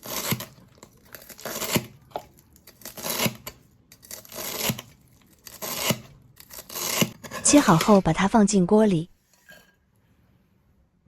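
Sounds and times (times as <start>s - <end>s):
knife cutting crunchy roots: 0.0s - 8.0s.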